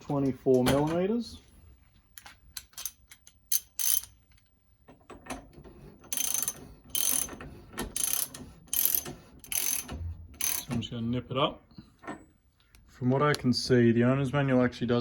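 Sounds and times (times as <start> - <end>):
socket ratchet clicking: 2.2 - 4.5, 6.0 - 10.7.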